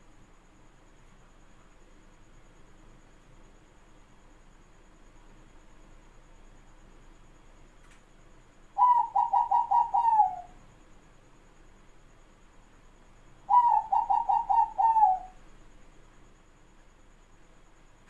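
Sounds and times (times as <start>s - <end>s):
dove cooing: 8.8s - 10.6s, 13.5s - 15.4s.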